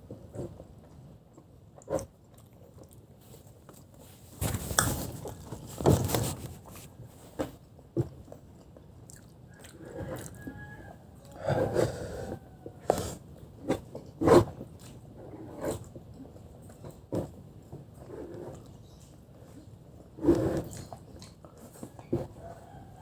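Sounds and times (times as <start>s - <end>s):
person biting and chewing food: 4.4s - 6.7s.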